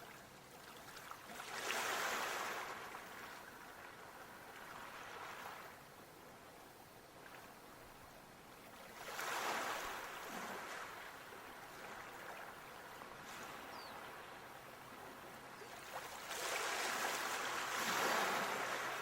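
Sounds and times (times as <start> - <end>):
sea waves washing onto shore: 15.9 - 19.0.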